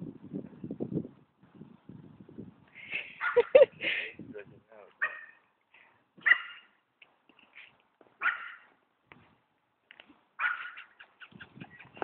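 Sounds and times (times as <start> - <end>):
puppies whimpering and yipping: 10.6 - 12.0.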